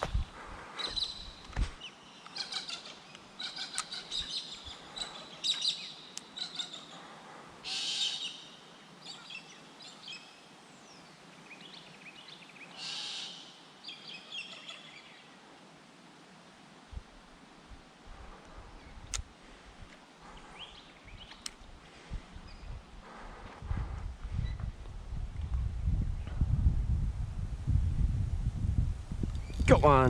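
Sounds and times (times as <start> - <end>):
birds chirping: 0.0 - 15.4, 20.2 - 23.4.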